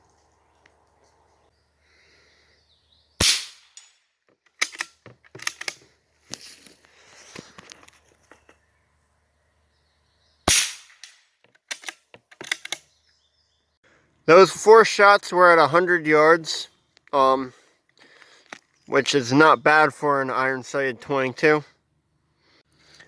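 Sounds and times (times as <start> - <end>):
rifle shots: 3.2 - 3.8, 10.5 - 11.2
rifle bolt clicks and rattles: 3.8 - 5.9, 10.9 - 12.9.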